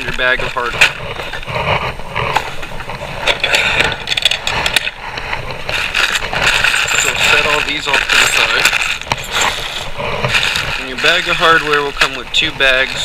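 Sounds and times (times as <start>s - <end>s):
small parts clinking: 3.2s - 5.0s, 5.7s - 9.5s
plastic bags crinkling: 5.6s - 13.0s.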